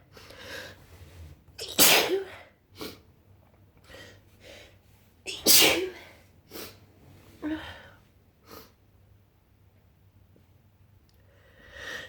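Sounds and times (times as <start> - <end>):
person breathing between sneezes: 1.6 - 3.0, 5.3 - 6.8.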